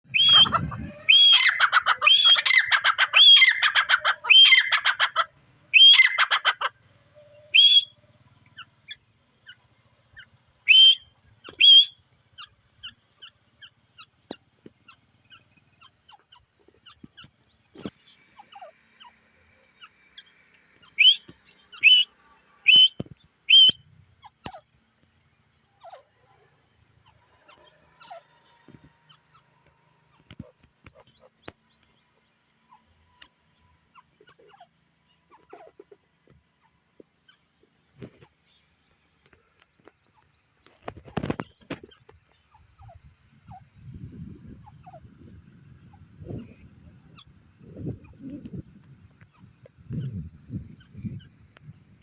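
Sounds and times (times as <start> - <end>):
bird calling: 0.0 - 24.7, 25.8 - 32.0
faint chirps: 0.1 - 52.0.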